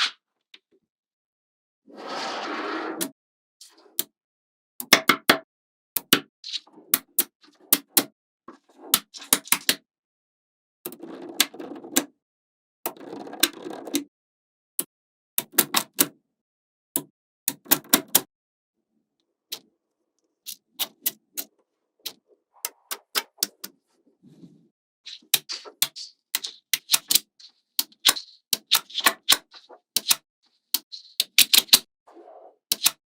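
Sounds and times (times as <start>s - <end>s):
magnetic balls clicking: 25.1s - 31.9s, 32.7s - 33.0s.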